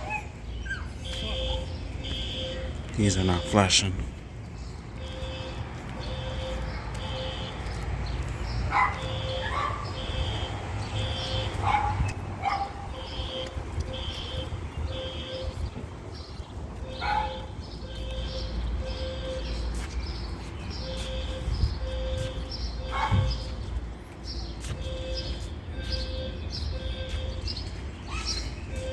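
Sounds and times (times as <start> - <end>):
fire alarm beeping: 5.0 - 8.4, 9.0 - 11.6, 12.9 - 15.8, 16.6 - 19.9, 20.8 - 23.5, 24.7 - 27.5.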